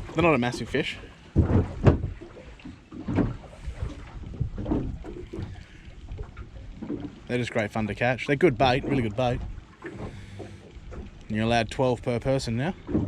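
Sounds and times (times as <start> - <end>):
wind buffeting microphone: 3.1 - 7.1.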